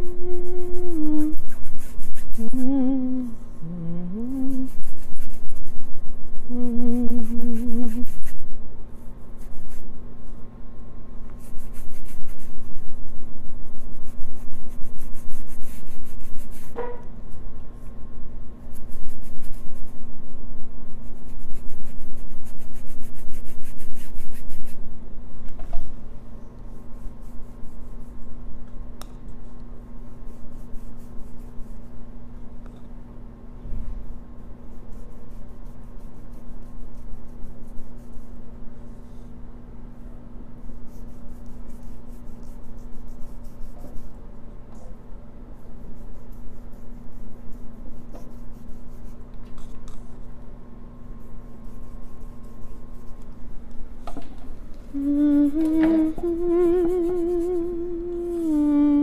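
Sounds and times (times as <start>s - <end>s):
paintbrush scrubbing: 0.0s - 2.8s, 4.2s - 8.5s, 9.3s - 9.9s, 11.4s - 17.0s, 18.7s - 20.2s, 21.0s - 24.8s, 34.7s - 39.0s, 40.6s - 44.1s, 45.7s - 49.7s, 51.2s - 53.2s, 55.0s - 58.6s
person humming: 0.0s - 8.5s, 54.9s - 59.0s.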